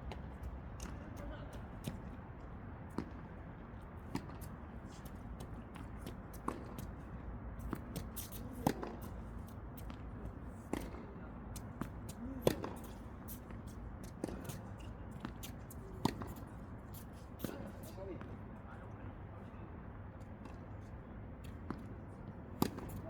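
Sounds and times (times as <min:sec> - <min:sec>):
tennis balls struck with rackets: 0:07.7 - 0:09.1, 0:10.7 - 0:14.6, 0:22.6 - 0:23.0.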